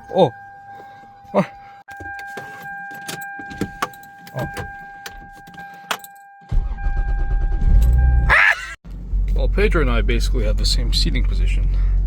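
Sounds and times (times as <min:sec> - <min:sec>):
car engine starting and rumbling: 0:06.5 - 0:12.0.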